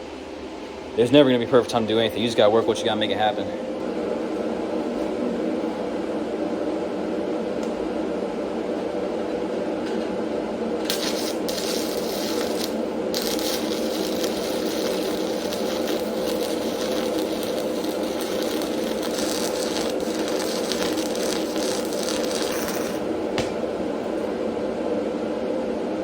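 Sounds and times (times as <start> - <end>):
steady hum: 0.0 - 26.0
welding arc crackling: 10.8 - 24.2.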